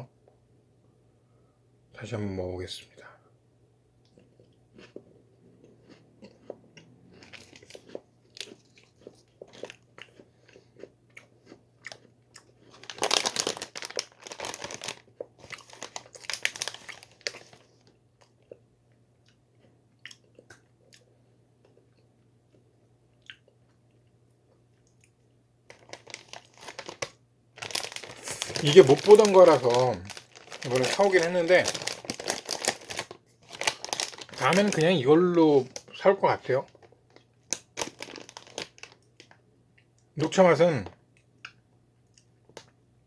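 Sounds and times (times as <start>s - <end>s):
biscuit crunching: 4.1s - 18.6s, 24.4s - 39.4s.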